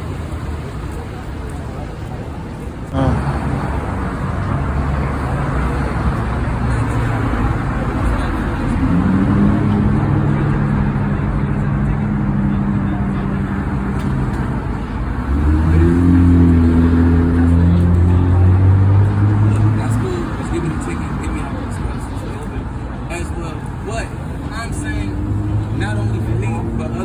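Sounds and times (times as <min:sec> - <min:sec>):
street traffic: 0:00.0 - 0:27.0
deep loud engine: 0:02.9 - 0:20.2.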